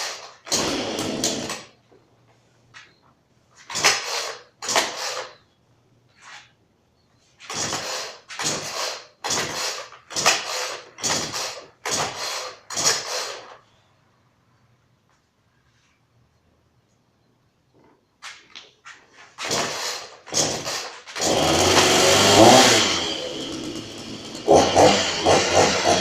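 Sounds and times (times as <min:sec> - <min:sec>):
chainsaw starter rope pulls: 0:00.1 - 0:01.7, 0:19.4 - 0:26.0.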